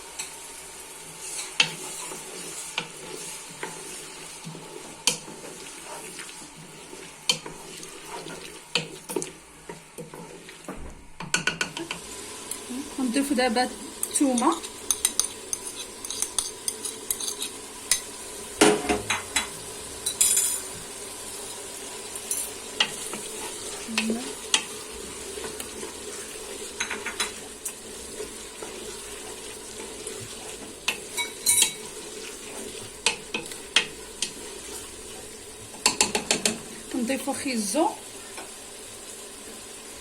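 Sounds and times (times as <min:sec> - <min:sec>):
vegetables sizzling in oil: 0:00.0 - 0:40.0
spoon scraping a pot: 0:01.2 - 0:10.5, 0:14.0 - 0:18.1, 0:29.8 - 0:34.9.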